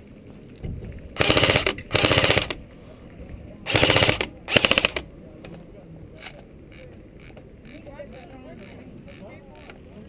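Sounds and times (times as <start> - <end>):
airsoft gun bursts: 1.2 - 2.6, 3.7 - 5.1.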